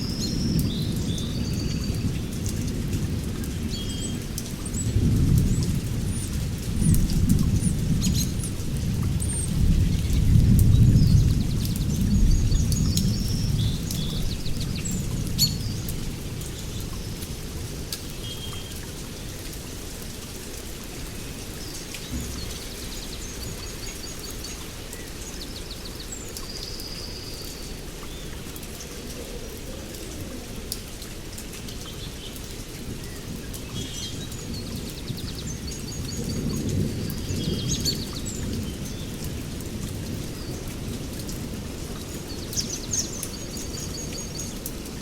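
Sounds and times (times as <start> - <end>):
heavy rain falling: 0.0 - 45.0
birds chirping: 21.1 - 28.9.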